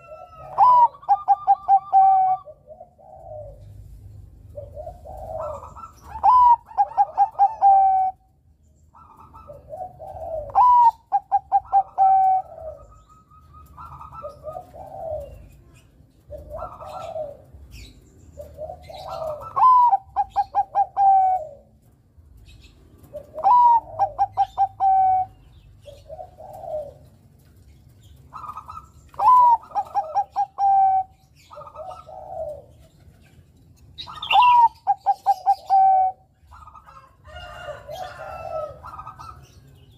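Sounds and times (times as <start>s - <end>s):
dove cooing song: 0.0s - 39.9s.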